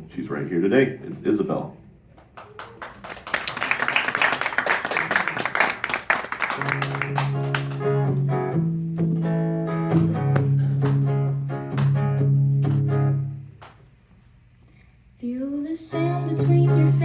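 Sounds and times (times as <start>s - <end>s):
acoustic guitar strumming: 6.6s - 13.6s, 15.9s - 17.0s.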